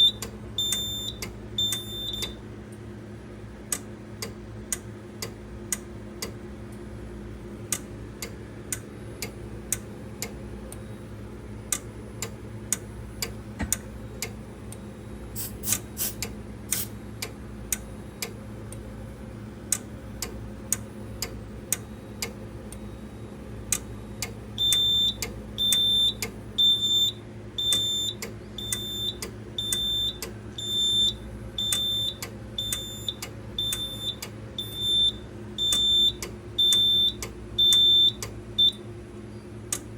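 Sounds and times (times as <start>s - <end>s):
fire alarm beeping: 0.0s - 2.4s, 24.6s - 38.8s
low steady hum: 0.0s - 39.9s.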